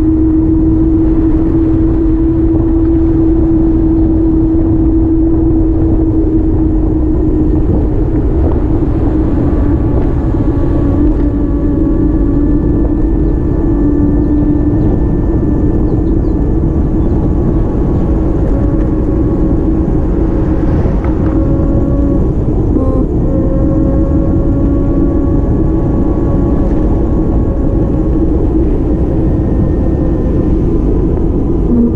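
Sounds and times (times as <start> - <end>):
vehicle engine droning hum: 0.0 - 31.9.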